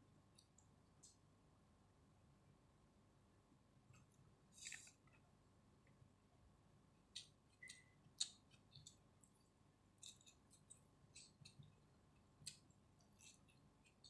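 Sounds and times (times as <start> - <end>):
person chewing with mouth clicks: 7.1 - 9.4, 10.0 - 14.0.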